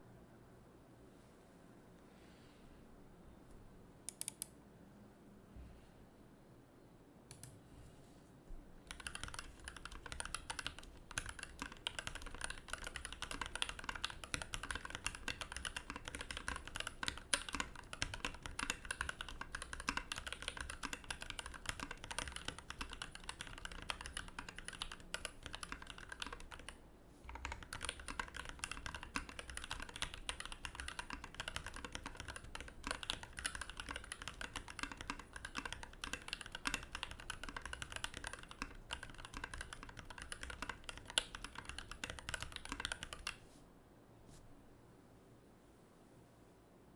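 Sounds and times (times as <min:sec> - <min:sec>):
typing on mechanical keyboard: 0:08.9 - 0:43.4.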